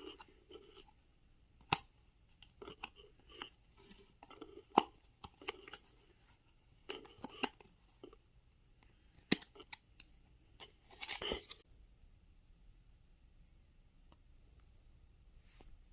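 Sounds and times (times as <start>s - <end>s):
cardboard and paper crinkling: 10.6s - 11.6s.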